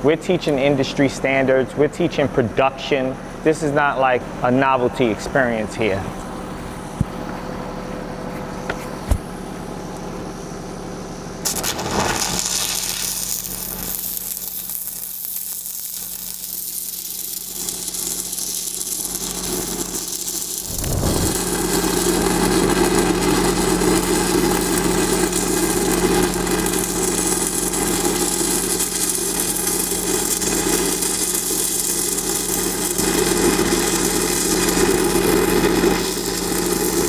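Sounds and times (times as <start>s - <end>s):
welding arc crackling and hissing: 11.4s - 37.0s
low hum: 20.6s - 21.6s.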